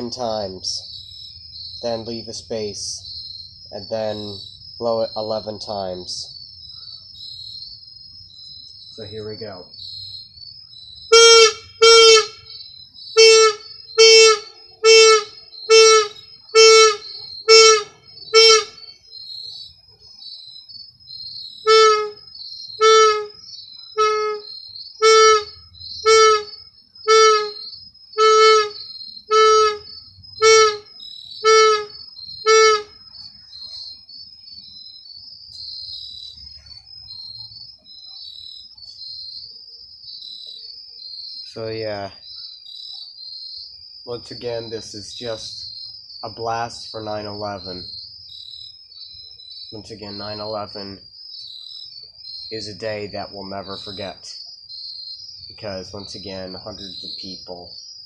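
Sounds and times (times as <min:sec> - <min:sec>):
crickets chirping: 0:00.0 - 0:58.0
air horn blasts: 0:11.1 - 0:12.4, 0:13.2 - 0:18.8, 0:21.7 - 0:22.2, 0:22.8 - 0:23.4, 0:24.0 - 0:26.5, 0:27.1 - 0:27.6, 0:28.2 - 0:33.0.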